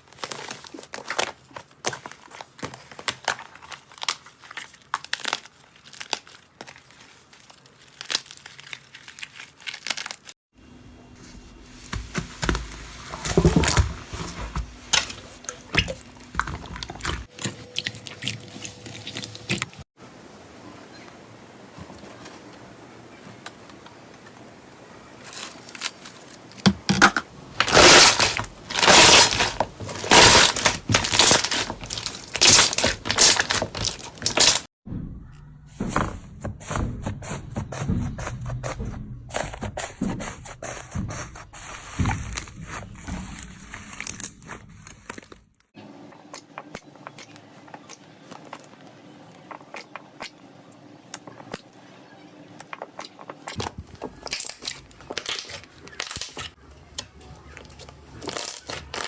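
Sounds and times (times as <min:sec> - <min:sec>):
slime squishing and popping: 0:27.6 - 0:34.6.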